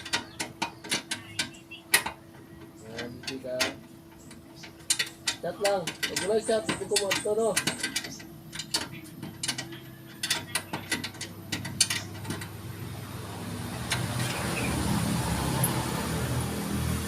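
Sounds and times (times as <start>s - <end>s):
hand tools clicking on metal: 0.0s - 12.6s.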